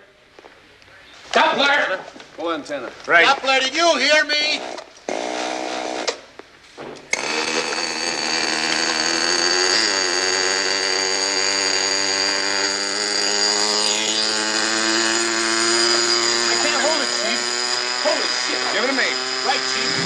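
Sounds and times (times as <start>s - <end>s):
toy helicopter motor whining: 7.1s - 20.0s.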